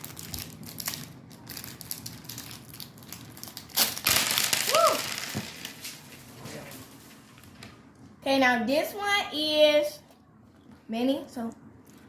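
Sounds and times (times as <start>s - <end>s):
plastic candy wrapper crinkling: 0.0s - 6.1s
wrapper tearing: 0.0s - 6.1s.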